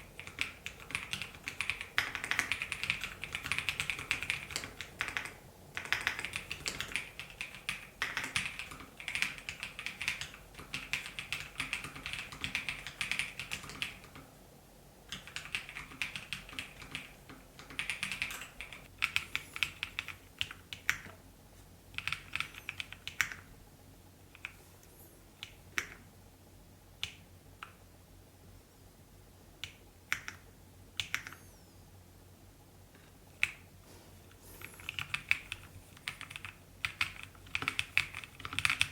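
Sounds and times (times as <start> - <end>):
mechanical keyboard typing: 0.1 - 14.2, 15.1 - 21.2, 22.0 - 23.5, 34.6 - 38.9.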